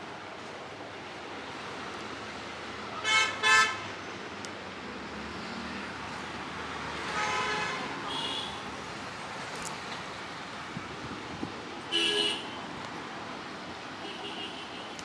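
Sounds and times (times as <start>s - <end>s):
road traffic noise: 0.0s - 15.0s
vehicle horn honking: 11.9s - 12.5s.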